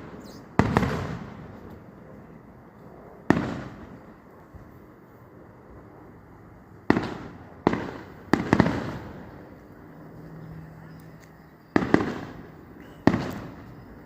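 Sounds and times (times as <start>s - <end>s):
fireworks bursting with rumbling echo: 0.0s - 2.3s, 3.2s - 4.7s, 6.8s - 9.7s, 11.6s - 14.0s.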